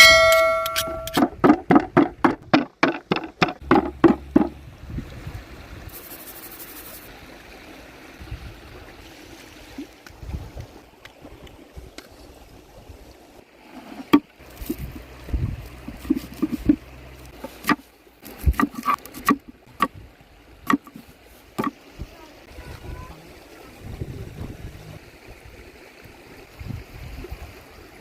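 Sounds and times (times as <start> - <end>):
sharp knocks: 0.0 - 4.6
trickling running water: 3.1 - 28.0.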